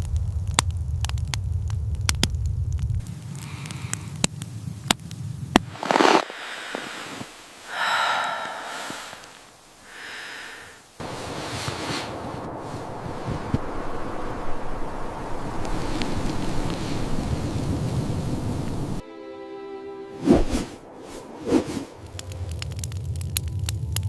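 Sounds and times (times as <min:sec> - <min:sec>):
sharp crackles: 0:00.0 - 0:19.0, 0:20.3 - 0:24.0
low rumble: 0:11.0 - 0:19.0, 0:20.2 - 0:24.0.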